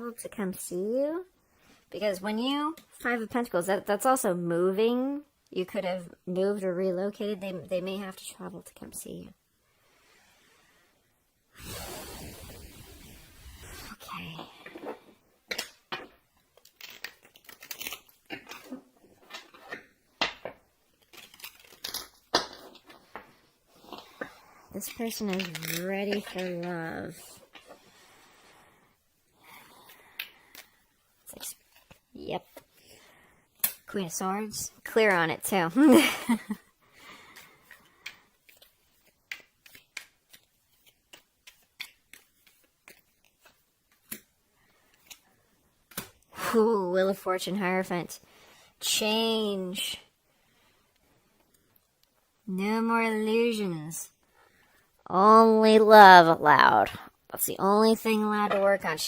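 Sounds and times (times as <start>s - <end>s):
cards rustling and shuffling: 14.8s - 28.1s, 29.9s - 32.9s, 36.5s - 46.3s
cards snapping and tapping: 38.0s - 44.3s.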